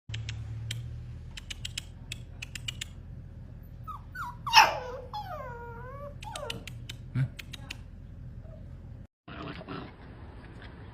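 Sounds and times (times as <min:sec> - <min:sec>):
dog whining: 0:03.7 - 0:06.8
dog whimpering: 0:03.8 - 0:06.8
dog yelping: 0:03.8 - 0:06.8.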